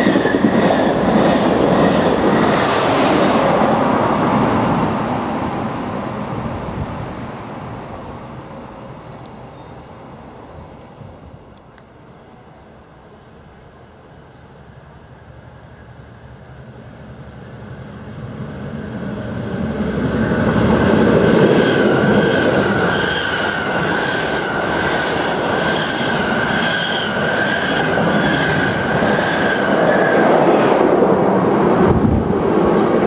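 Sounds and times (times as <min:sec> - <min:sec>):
train running through station: 0:00.0 - 0:33.0.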